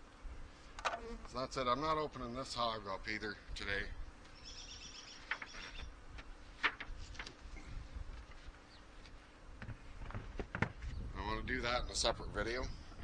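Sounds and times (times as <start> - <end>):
songbird trilling: 4.4 - 5.9.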